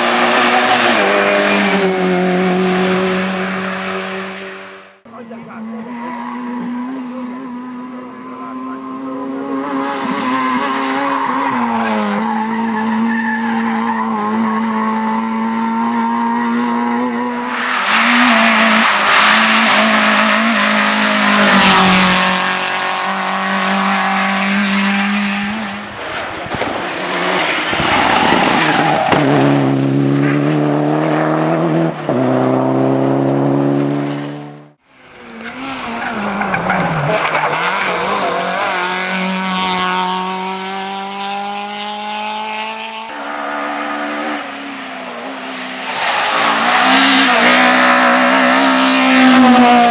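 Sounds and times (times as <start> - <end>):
tyre and road noise: 0.0 - 14.4, 16.6 - 49.9
rally car engine revving hard: 0.0 - 49.9.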